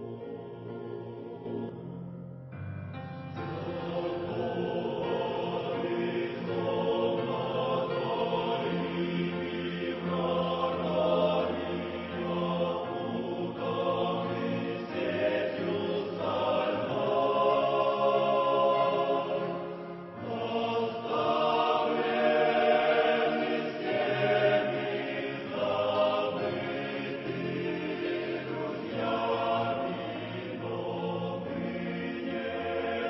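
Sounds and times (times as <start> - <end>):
choir singing a hymn: 0.0 - 2.0, 2.9 - 33.0.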